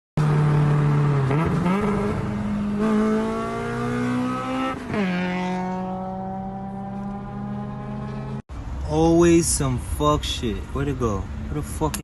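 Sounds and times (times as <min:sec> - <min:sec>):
car engine revving: 0:00.2 - 0:08.4.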